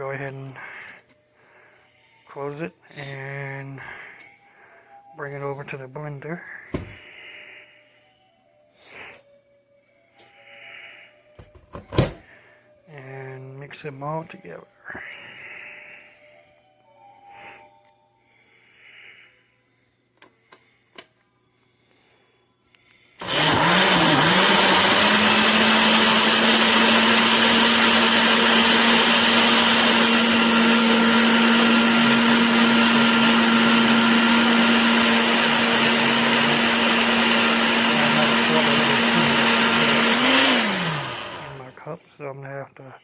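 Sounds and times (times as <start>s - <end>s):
blender motor running: 23.2s - 41.8s.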